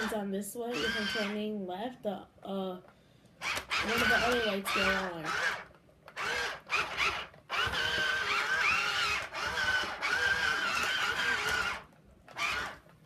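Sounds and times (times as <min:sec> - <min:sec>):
small electric motors whining: 0:00.0 - 0:01.4, 0:03.4 - 0:12.9.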